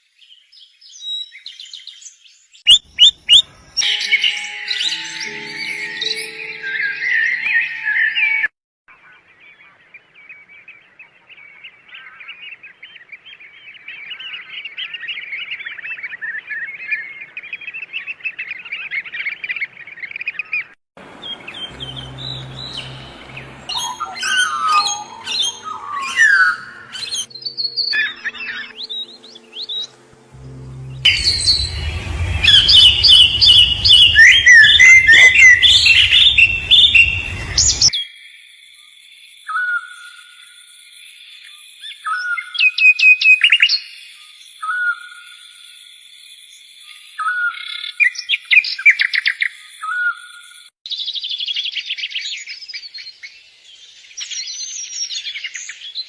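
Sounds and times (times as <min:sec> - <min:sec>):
birds chirping and calling: 0:00.9 - 0:30.0, 0:31.1 - 0:37.9
low hum: 0:21.0 - 0:37.9.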